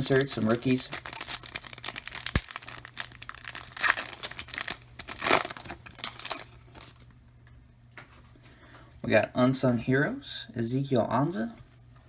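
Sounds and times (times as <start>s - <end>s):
wrapper tearing and crinkling: 0.0s - 7.0s.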